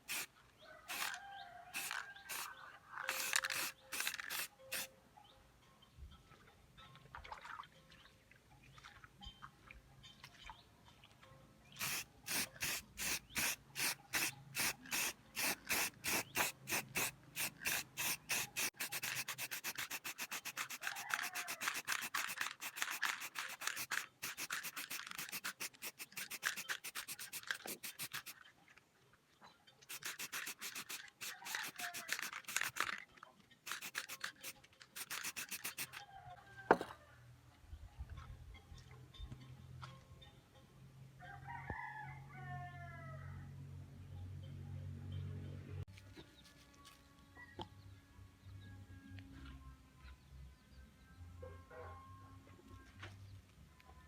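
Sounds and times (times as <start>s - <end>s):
sandpaper rubbing on metal pipe: 0.0s - 0.3s, 0.9s - 1.2s, 1.8s - 2.5s, 3.1s - 4.9s, 11.8s - 28.4s, 29.9s - 32.9s, 33.7s - 36.0s.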